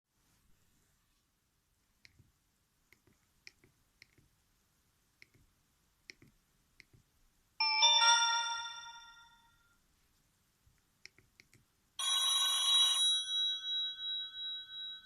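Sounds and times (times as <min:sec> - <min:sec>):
ringing chord ringtone: 0:07.6 - 0:09.7, 0:12.0 - 0:15.0.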